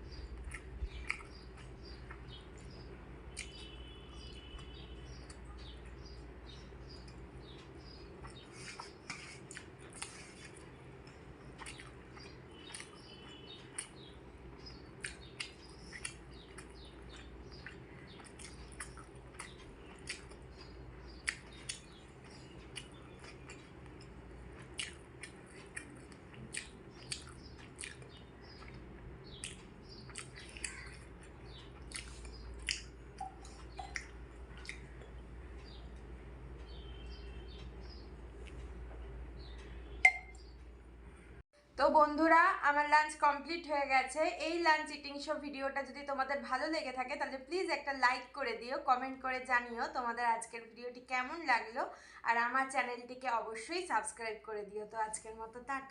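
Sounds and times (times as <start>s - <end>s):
steady low hum: 0.0s - 43.0s
wet mouth clicks and smacks: 0.4s - 2.2s, 11.6s - 13.0s, 15.0s - 20.4s, 21.2s - 21.8s, 24.6s - 28.8s, 29.4s - 31.0s, 31.8s - 34.8s
person chewing: 0.4s - 2.7s, 8.2s - 14.0s, 15.0s - 28.8s, 29.4s - 35.1s.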